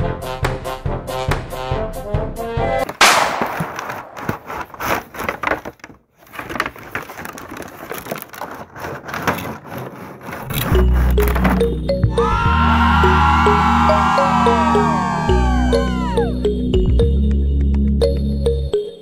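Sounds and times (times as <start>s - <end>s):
clicks and crackles: 2.9s - 10.7s.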